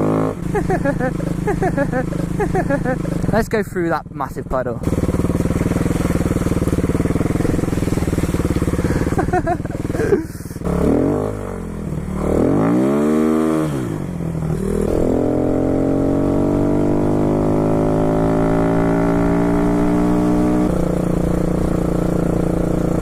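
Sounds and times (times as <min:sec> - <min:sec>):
motorcycle engine revving: 0:00.0 - 0:23.0.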